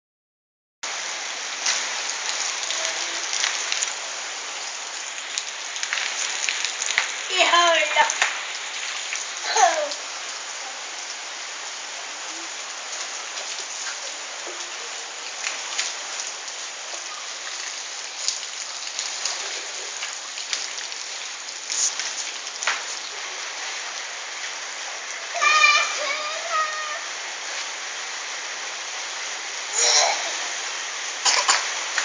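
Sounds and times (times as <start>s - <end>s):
rain pattering: 0.9s - 32.0s.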